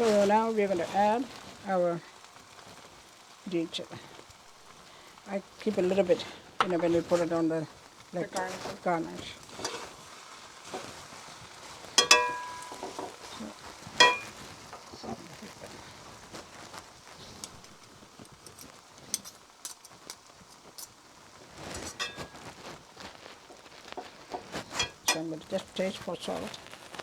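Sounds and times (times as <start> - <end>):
metal utensils clanking on pan: 5.7 - 7.5, 8.2 - 10.0, 11.9 - 14.9, 17.3 - 20.9, 21.7 - 22.7, 23.4 - 26.3.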